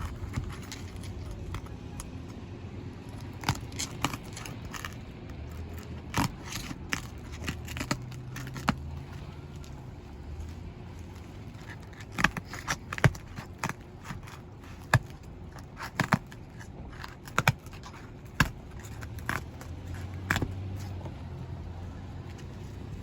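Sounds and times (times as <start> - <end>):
shingle sealant cracking: 0.0 - 23.0.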